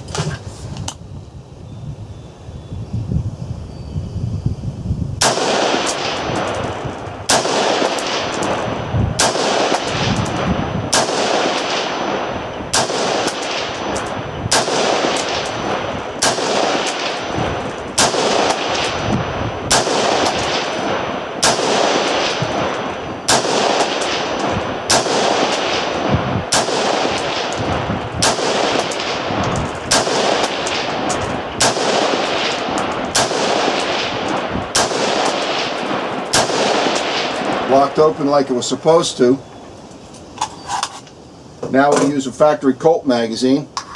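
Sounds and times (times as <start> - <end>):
rifle shots with echo: 5.2 - 39.4.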